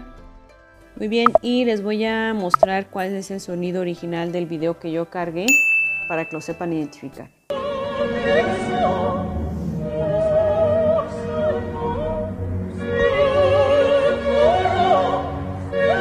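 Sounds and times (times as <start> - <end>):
operatic singing with orchestra: 7.5 - 16.0.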